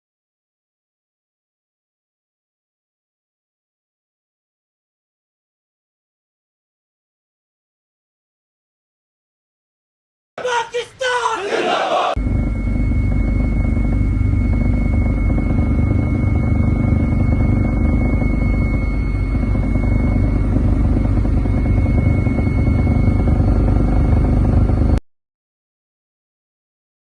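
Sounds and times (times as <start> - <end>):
constant high whine: 10.6 - 25.0
loud engine drone: 12.1 - 25.0.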